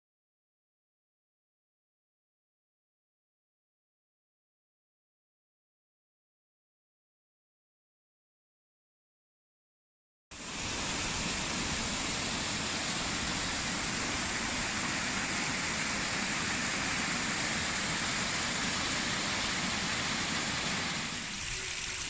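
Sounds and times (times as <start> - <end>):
fast-flowing water rushing: 10.4 - 22.0.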